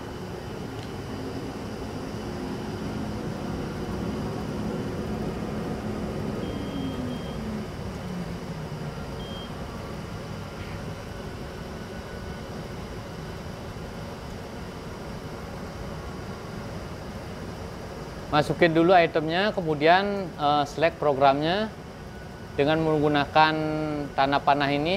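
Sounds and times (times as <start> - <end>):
motor hum dropping in pitch: 0.0 - 11.0
tumble dryer rumbling: 0.0 - 16.9
high electronic beeps: 6.4 - 7.6, 9.2 - 9.6.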